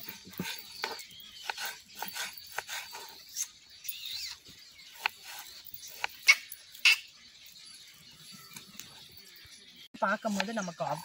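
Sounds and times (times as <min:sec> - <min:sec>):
birds chirping: 0:00.0 - 0:11.0
sharp bird calls: 0:00.0 - 0:11.0.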